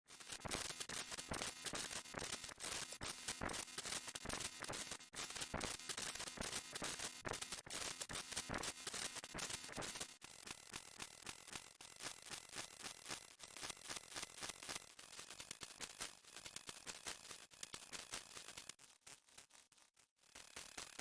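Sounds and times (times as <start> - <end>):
sharp clicks and crackles: 14.4 - 21.0.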